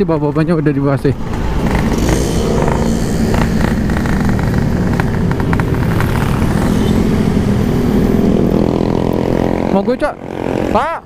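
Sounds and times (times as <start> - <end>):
two-stroke motorcycle engine running: 1.2 - 11.0.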